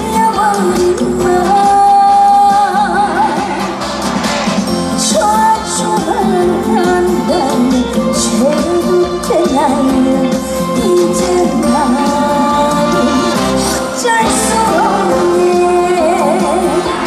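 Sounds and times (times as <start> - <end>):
woman singing with vibrato: 0.0 - 3.8, 4.7 - 17.0
band accompaniment: 0.0 - 17.0.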